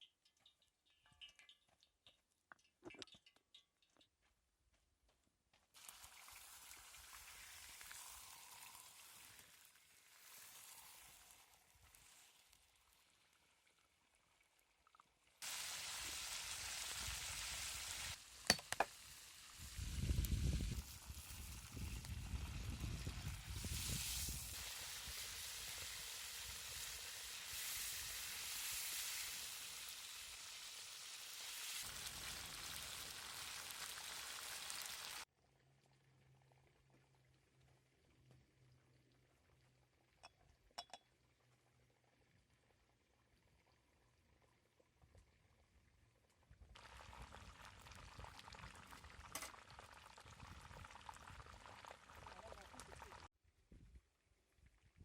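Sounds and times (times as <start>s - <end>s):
food sizzling in a pan: 5.8s - 13.2s, 15.4s - 35.3s.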